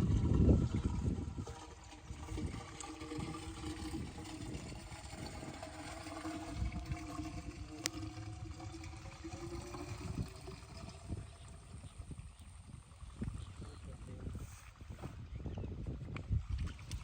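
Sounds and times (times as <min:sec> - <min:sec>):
diesel water pump humming: 0:00.0 - 0:14.3
water splashing and trickling: 0:00.0 - 0:17.0.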